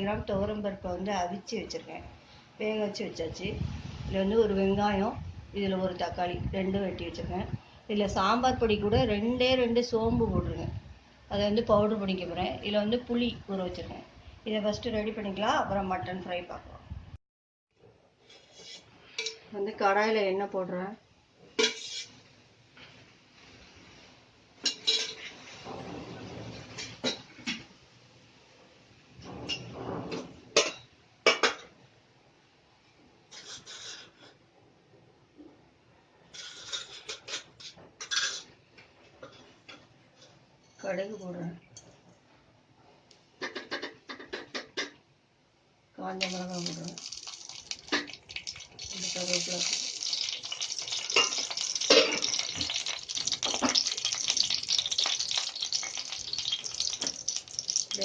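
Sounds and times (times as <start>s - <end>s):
spices sizzling in hot oil: 21.6s - 22.3s, 46.2s - 58.0s
metal pots clanking: 24.6s - 25.3s, 46.2s - 58.0s.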